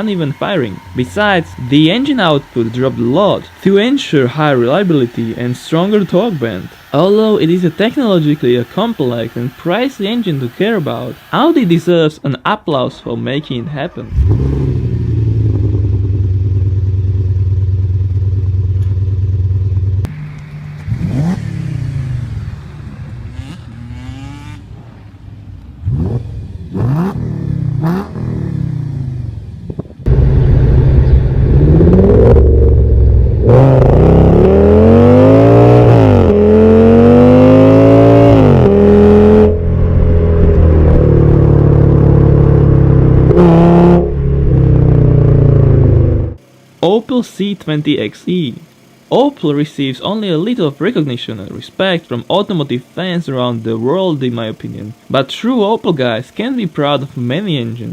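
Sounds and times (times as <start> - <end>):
car engine revving: 0.0 - 11.9, 13.3 - 46.8.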